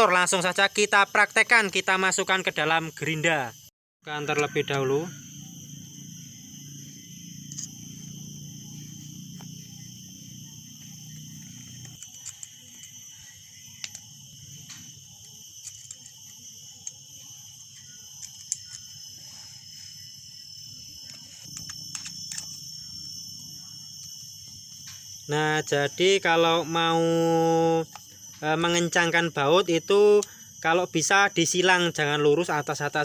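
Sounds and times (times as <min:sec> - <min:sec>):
small clicks and knocks of parts: 0:07.5 - 0:07.8, 0:11.5 - 0:13.0, 0:13.8 - 0:17.0, 0:17.6 - 0:18.9, 0:21.0 - 0:22.6.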